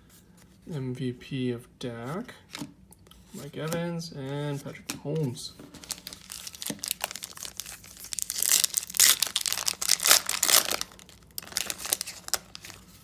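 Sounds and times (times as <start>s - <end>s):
foil wrapper crinkling and tearing: 5.7s - 13.0s.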